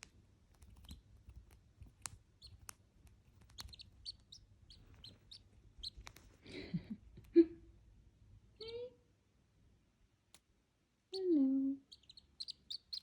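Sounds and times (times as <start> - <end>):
soft clicks: 0.0 - 6.3
duckling peeping: 0.6 - 6.2, 11.1 - 13.0.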